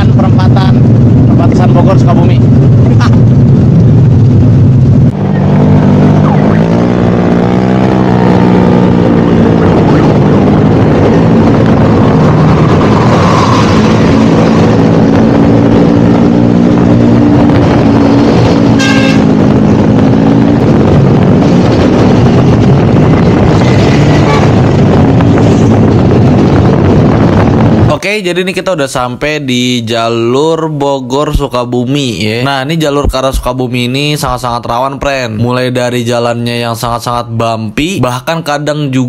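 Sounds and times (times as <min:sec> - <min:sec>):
road and wind noise: 0:00.0 - 0:39.0
scooter engines with loud exhausts: 0:14.7 - 0:21.3.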